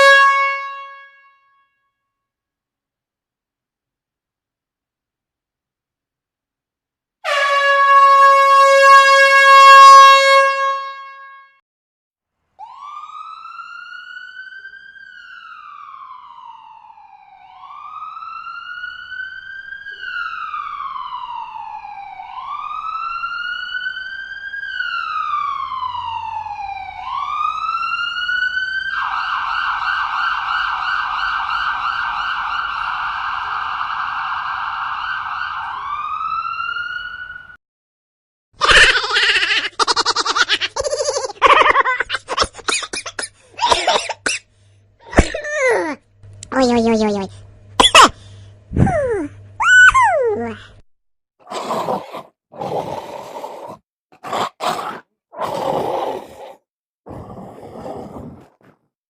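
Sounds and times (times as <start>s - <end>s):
loud horn blast: 0.0s - 1.6s, 7.2s - 11.6s
siren wailing: 12.6s - 37.6s.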